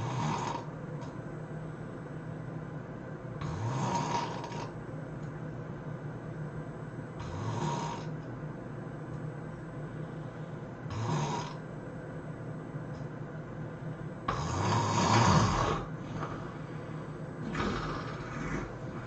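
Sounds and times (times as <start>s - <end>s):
person snoring: 0.0s - 0.7s, 3.4s - 4.7s, 7.2s - 8.1s, 10.9s - 11.6s, 14.3s - 19.0s
steady low hum: 0.0s - 19.0s.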